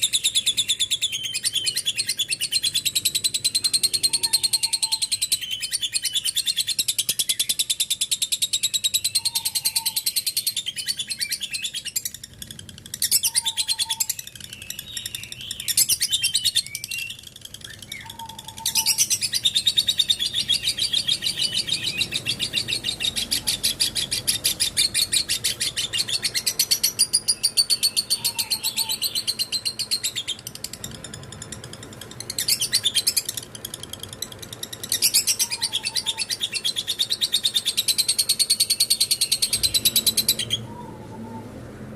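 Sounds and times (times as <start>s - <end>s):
bird chattering trill: 0.0s - 41.6s.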